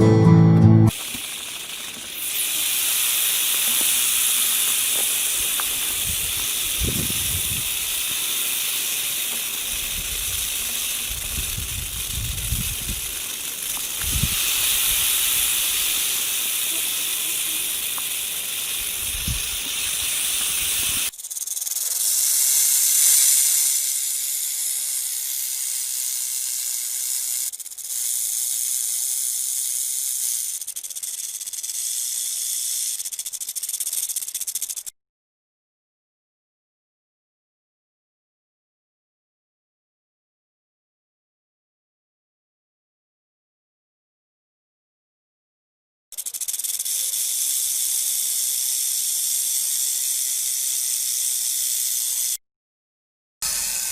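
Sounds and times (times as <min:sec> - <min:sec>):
rattlesnake tail rattling: 0:00.9 - 0:34.9, 0:46.1 - 0:52.4, 0:53.4 - 0:53.9.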